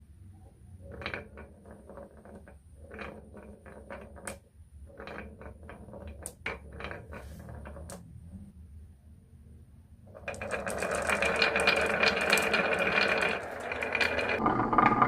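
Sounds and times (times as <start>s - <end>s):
marbles clicking on wooden run: 0.8s - 8.1s, 10.1s - 15.0s
marbles rolling rumble: 0.8s - 8.5s, 10.1s - 15.0s.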